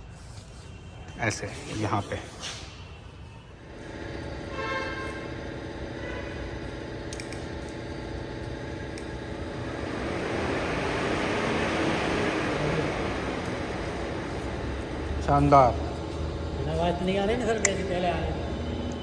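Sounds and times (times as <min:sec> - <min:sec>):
radiator fan rushing air: 0:03.6 - 0:19.0
car engine idling: 0:04.0 - 0:19.0.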